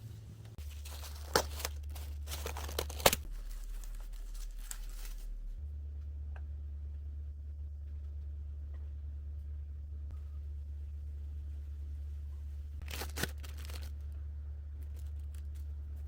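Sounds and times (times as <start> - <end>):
packaging crinkling and tearing: 0.6 - 5.6, 12.8 - 14.1.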